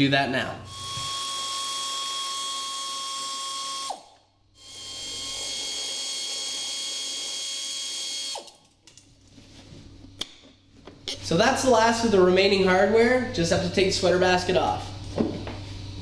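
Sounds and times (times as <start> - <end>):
cordless power driver running: 0.7 - 4.0.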